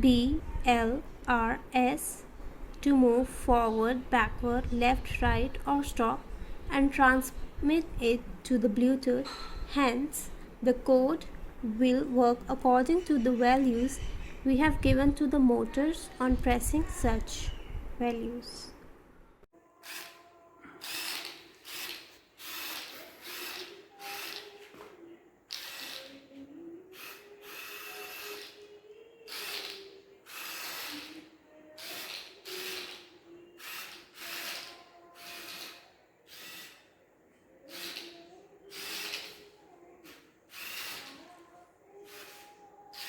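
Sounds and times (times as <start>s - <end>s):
small gear motors whirring: 20.8s - 24.5s, 25.5s - 26.2s, 27.0s - 28.6s, 29.3s - 31.2s, 31.8s - 36.9s, 37.7s - 39.4s, 40.1s - 41.2s.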